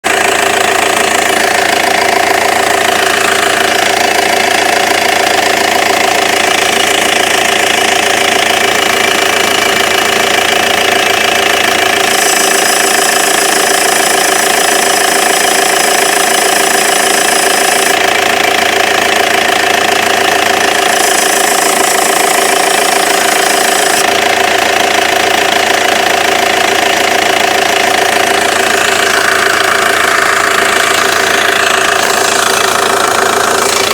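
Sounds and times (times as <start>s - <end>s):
diesel engine idling: 0.0s - 33.9s
turbocharger whistle and hiss: 11.8s - 18.0s, 20.1s - 24.2s.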